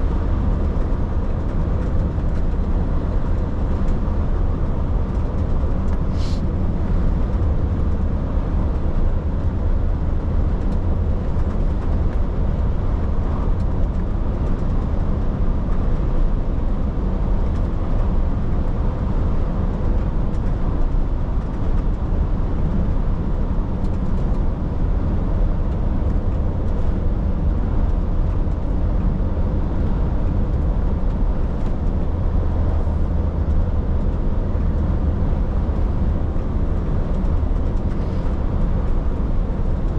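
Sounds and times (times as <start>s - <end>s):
truck engine and road rumble: 0.0s - 39.9s.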